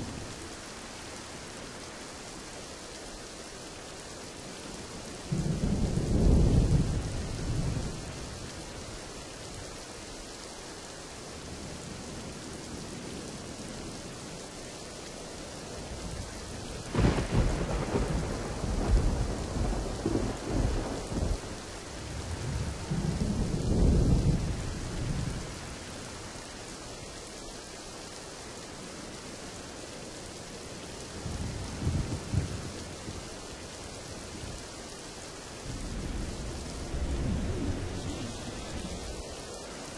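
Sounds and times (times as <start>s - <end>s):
steady rain: 0.0s - 39.9s
rolling thunder: 16.8s - 21.4s, 35.7s - 39.2s.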